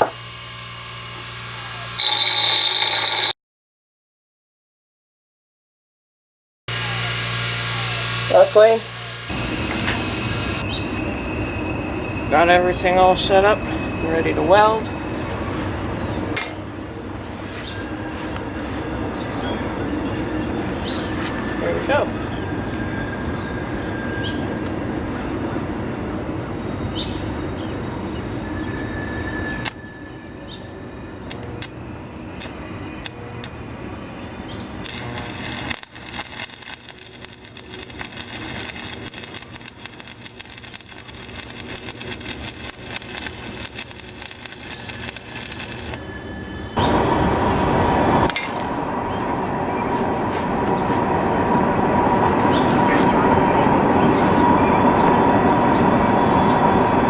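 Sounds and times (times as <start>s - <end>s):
welding arc crackling: 0.0s - 3.3s, 6.7s - 10.6s, 34.8s - 46.1s
steady noise with hum: 34.8s - 46.2s.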